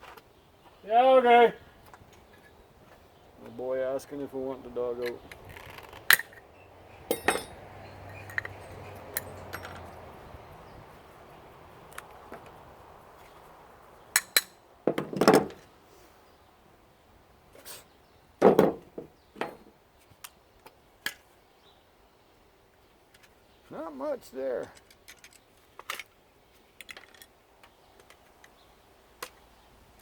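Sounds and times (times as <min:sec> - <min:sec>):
clinks and knocks of tools: 0:05.0 - 0:06.4, 0:07.1 - 0:10.1, 0:14.1 - 0:15.7, 0:23.1 - 0:23.4, 0:24.6 - 0:28.6.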